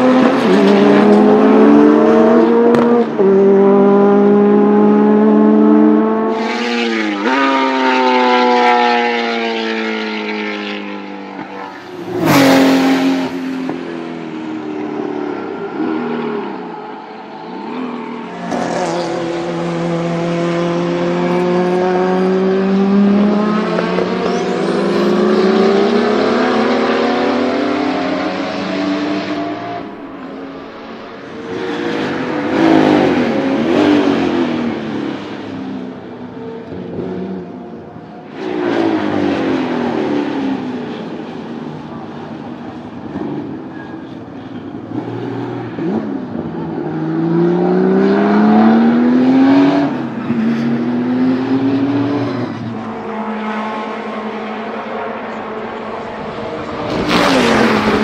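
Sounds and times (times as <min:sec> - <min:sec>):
race car engine running hard: 0:16.4 - 0:45.0.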